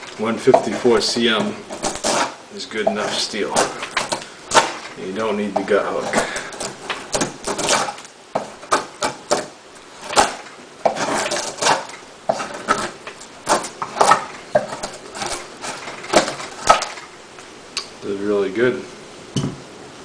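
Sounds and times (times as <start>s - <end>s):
knife blade cutting wood: 0.5s - 5.0s, 5.6s - 17.0s.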